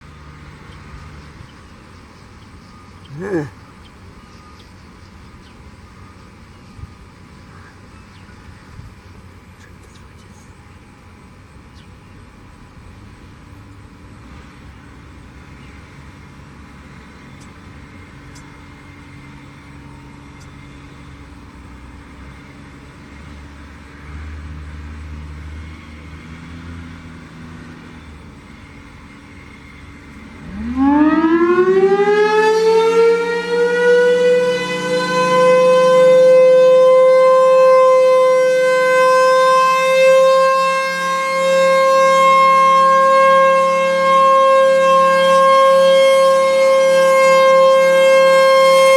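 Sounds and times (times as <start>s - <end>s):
warning siren wailing: 3.1s - 3.5s, 29.6s - 48.9s.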